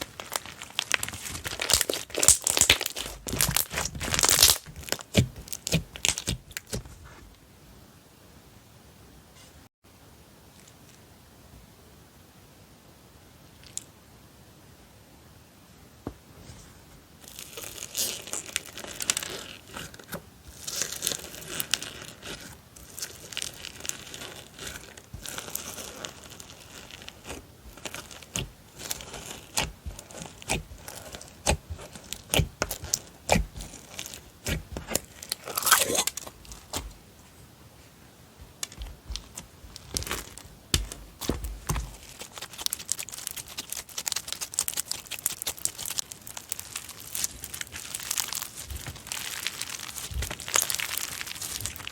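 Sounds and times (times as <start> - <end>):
slime crackling and popping: 0.0 - 7.0, 17.2 - 37.0, 38.6 - 51.9.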